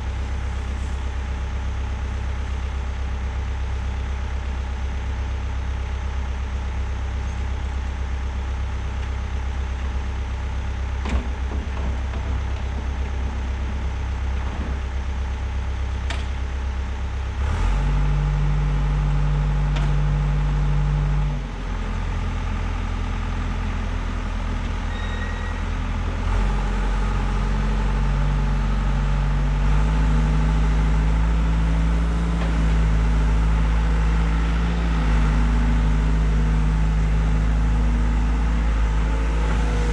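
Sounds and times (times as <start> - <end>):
loader diesel engine revving: 17.3 - 24.8, 25.7 - 39.9.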